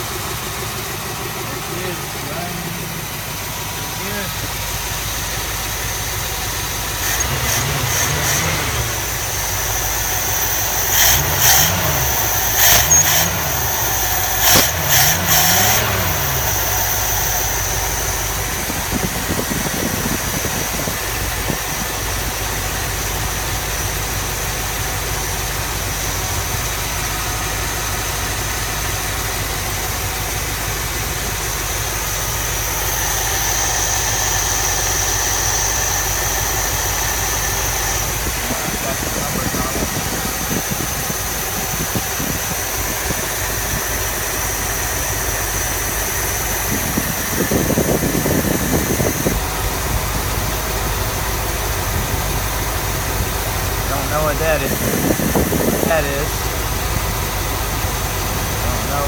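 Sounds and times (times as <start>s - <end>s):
car engine revving and idling: 0.0s - 59.0s.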